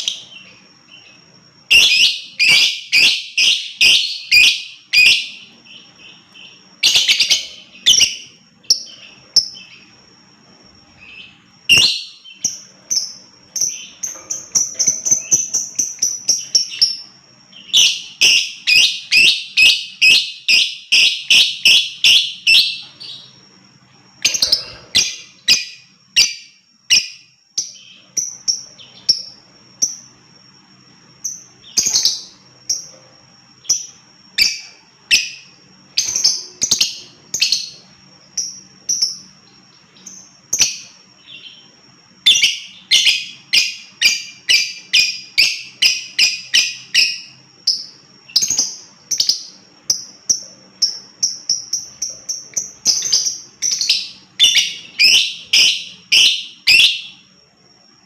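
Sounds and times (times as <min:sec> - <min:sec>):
bird chirping shrilly: 0:01.7 - 0:09.9, 0:24.2 - 0:27.2.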